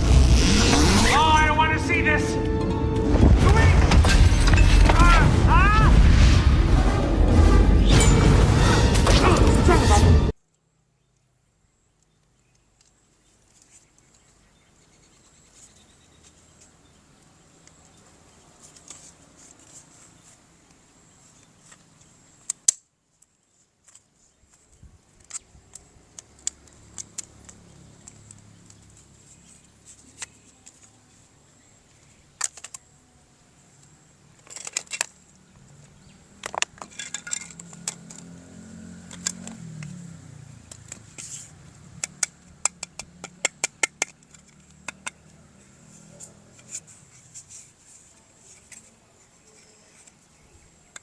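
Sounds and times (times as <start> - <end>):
plastic toy pieces clicking: 32.4 - 32.8, 34.4 - 35.2, 42.0 - 45.2.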